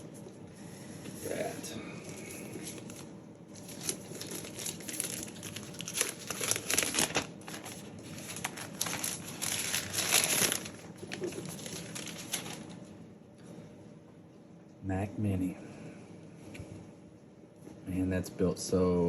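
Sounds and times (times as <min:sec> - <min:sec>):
packaging wrap crinkling: 0:01.2 - 0:12.9.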